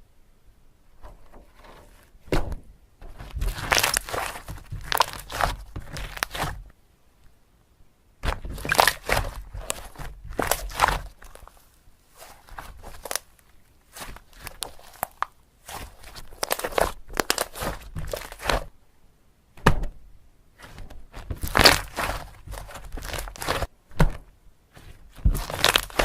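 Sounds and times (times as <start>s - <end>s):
slime squeezed crackling: 3.2s - 6.7s, 8.2s - 18.7s, 20.6s - 23.7s, 24.8s - 26.0s.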